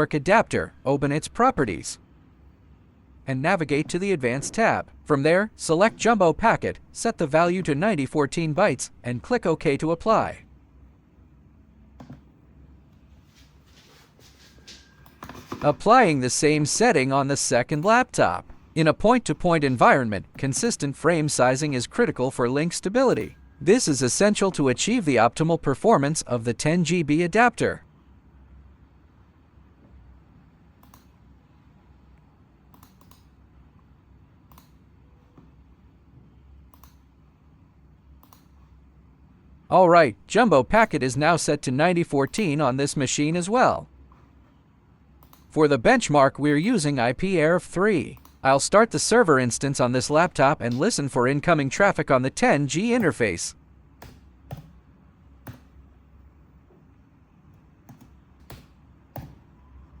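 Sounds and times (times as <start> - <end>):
low steady hum: 0.0 - 60.0
computer mouse clicks: 30.8 - 31.2, 32.7 - 33.3, 34.5 - 34.8, 36.7 - 37.1, 38.2 - 38.6, 45.2 - 45.5, 57.5 - 59.4.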